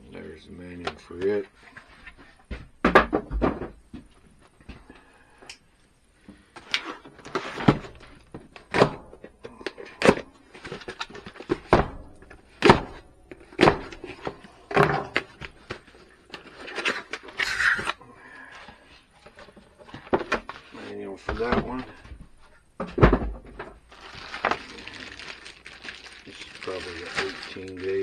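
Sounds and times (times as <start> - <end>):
packaging rustling: 6.6 - 22.6, 23.5 - 28.0.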